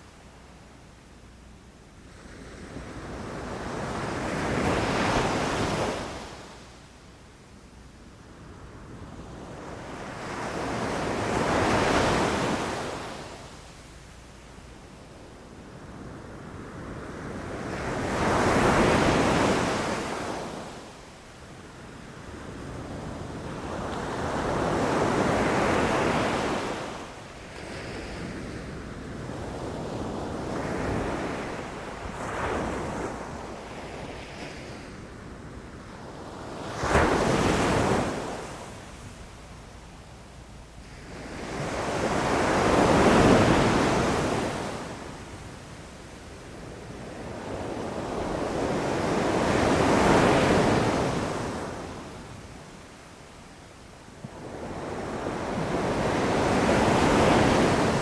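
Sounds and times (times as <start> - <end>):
waves breaking on shore: 54.3 - 58.0.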